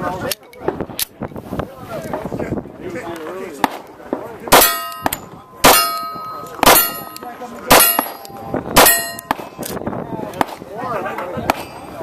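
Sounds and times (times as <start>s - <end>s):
steel target ringing: 4.5s - 9.4s
pistol shots: 4.5s - 9.6s.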